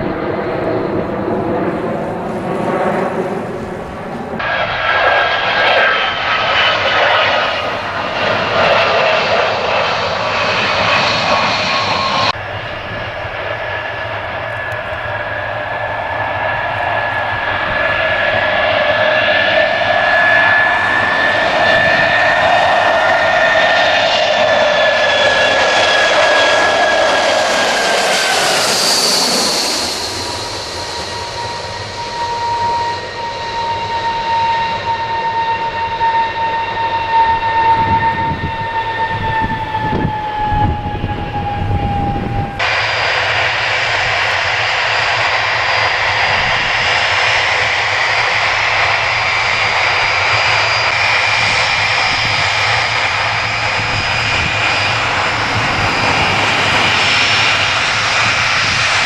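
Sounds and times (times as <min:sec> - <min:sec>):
jet engine whine: 0:00.0 - 0:59.0.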